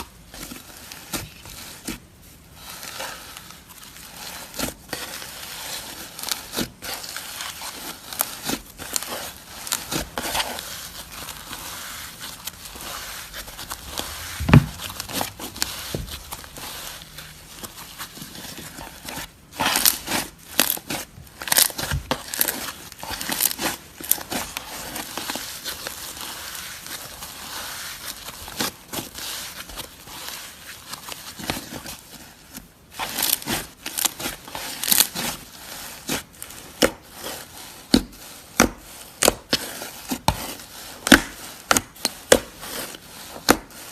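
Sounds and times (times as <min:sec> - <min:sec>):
hands squishing slime: 0:04.0 - 0:31.4.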